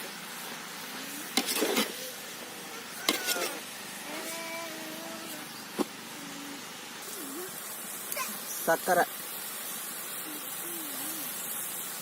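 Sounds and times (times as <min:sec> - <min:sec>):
sizzling hiss: 0:00.0 - 0:12.0
ladle knocking and scraping a pan: 0:03.0 - 0:03.6.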